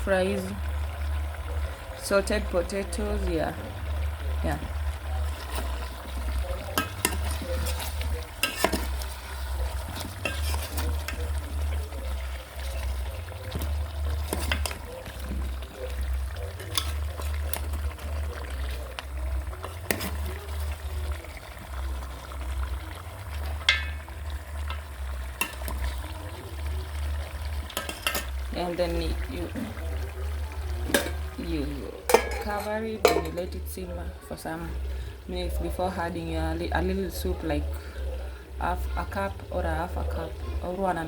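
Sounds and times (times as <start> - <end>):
low sizzle of frying: 0.0 - 41.0
spoon scraping and knocking pot: 6.6 - 11.3, 12.6 - 15.7, 16.5 - 17.7, 19.6 - 20.3, 23.6 - 24.0, 27.7 - 28.4, 30.9 - 31.4, 32.1 - 33.6.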